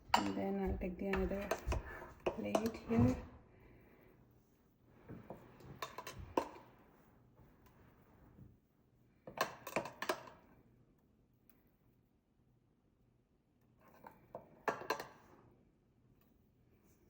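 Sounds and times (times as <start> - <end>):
metal plates and utensils clinking: 0.1 - 0.6.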